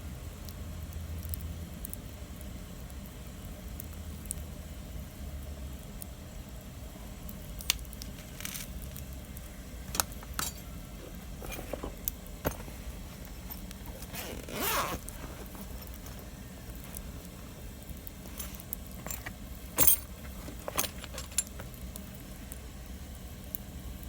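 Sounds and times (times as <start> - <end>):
low steady rumble: 0.0 - 24.0
campfire crackling and popping: 0.3 - 4.6, 5.8 - 13.9, 15.8 - 20.2, 21.4 - 23.8
scraping rustle: 10.2 - 17.5, 18.2 - 21.7.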